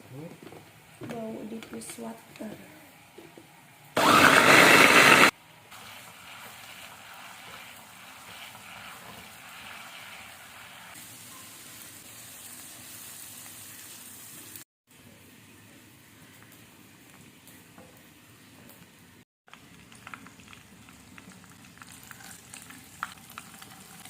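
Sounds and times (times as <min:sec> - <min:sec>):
electric blender running: 0:04.0 - 0:05.4.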